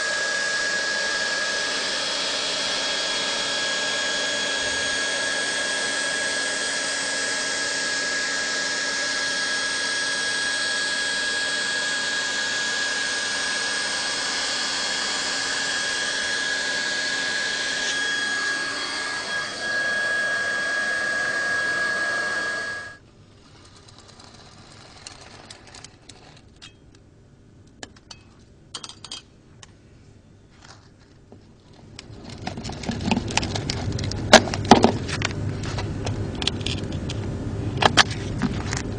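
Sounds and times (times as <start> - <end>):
hot-air welding gun blowing: 0.0 - 26.5.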